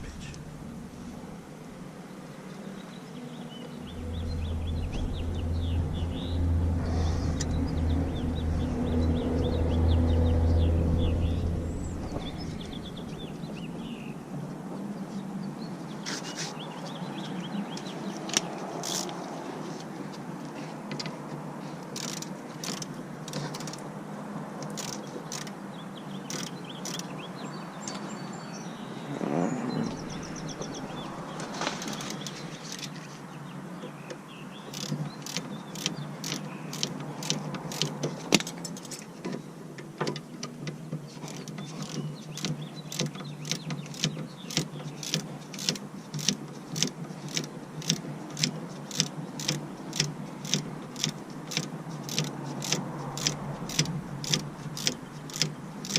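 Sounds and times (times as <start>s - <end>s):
ratchet wrench clicking: 22.0s - 23.8s, 24.6s - 25.5s, 26.3s - 27.1s, 34.7s - 38.5s, 41.4s - 55.9s.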